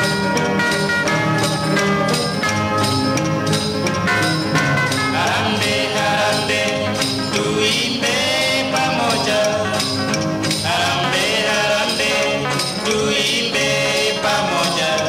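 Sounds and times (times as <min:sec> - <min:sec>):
band music with percussive beat: 0:00.0 - 0:15.0.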